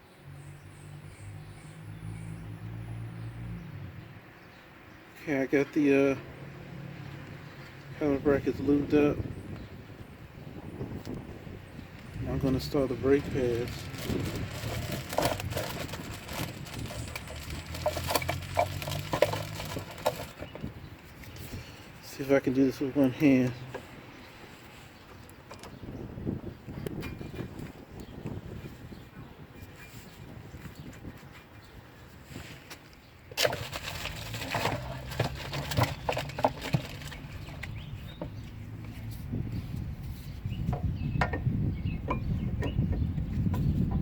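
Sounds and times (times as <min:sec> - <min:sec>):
metal scraping: 0:12.3 - 0:20.5
brake pads clicking against metal: 0:12.5 - 0:21.4.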